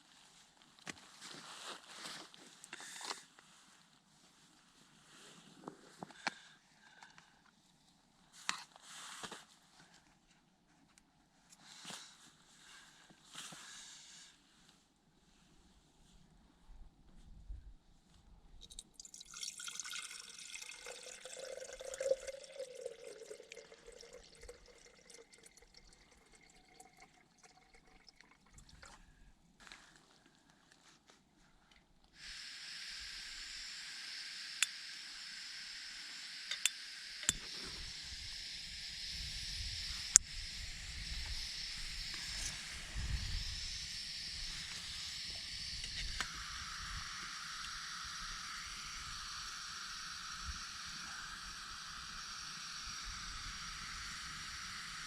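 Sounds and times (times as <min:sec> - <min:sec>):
water pouring and dripping: 0:18.6 - 0:29.0
gas stove hissing: 0:32.2 - 0:55.0.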